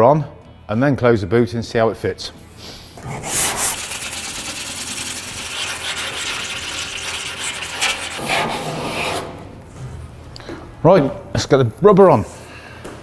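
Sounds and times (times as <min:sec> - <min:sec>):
sandpaper scraping car panel: 0:03.0 - 0:09.3.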